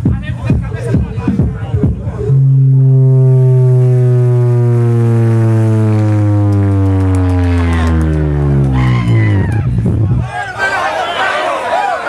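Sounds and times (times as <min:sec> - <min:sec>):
distorted bass tone sweeping down: 0:00.8 - 0:10.5.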